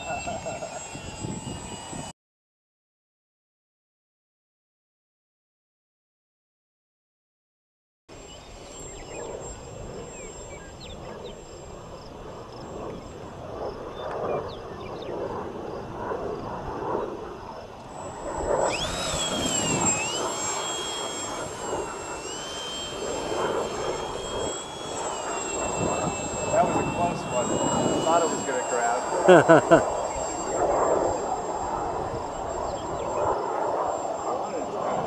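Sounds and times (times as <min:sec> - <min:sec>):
model airplane motor whining: 0:00.0 - 0:02.1, 0:08.1 - 0:35.0
wind on microphone: 0:00.0 - 0:02.1, 0:12.8 - 0:20.4, 0:22.9 - 0:35.0.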